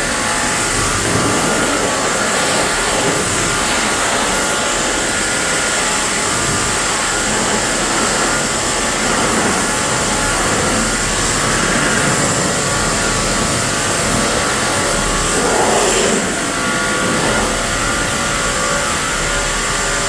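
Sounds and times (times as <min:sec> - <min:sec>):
pressure washer spraying water: 0:00.0 - 0:20.0.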